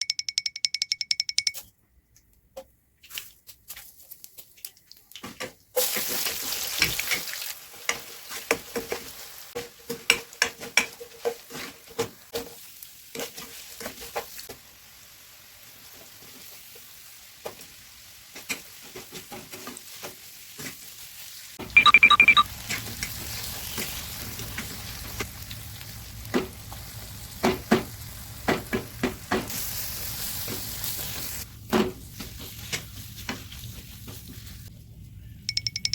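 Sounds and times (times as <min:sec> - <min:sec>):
repeated high tones: 0:00.0 - 0:01.7, 0:21.7 - 0:22.5, 0:35.5 - 0:35.9
food sizzling in a pan: 0:05.8 - 0:21.8, 0:22.4 - 0:34.7.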